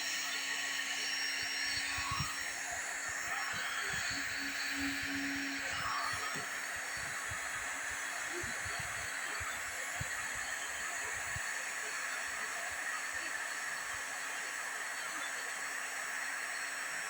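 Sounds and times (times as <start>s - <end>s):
hot-air welding gun hissing: 0.0s - 12.5s
faint steady hum: 0.0s - 17.0s.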